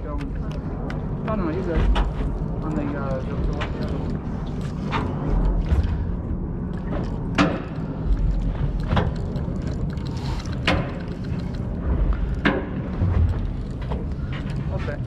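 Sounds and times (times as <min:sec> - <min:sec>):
fishing boat engine rumble: 0:01.0 - 0:15.0.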